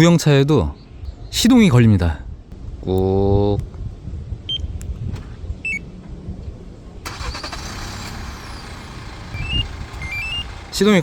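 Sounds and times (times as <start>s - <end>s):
short electronic beeps: 5.6s - 5.8s, 9.4s - 10.5s
car engine starting and running: 7.0s - 11.0s.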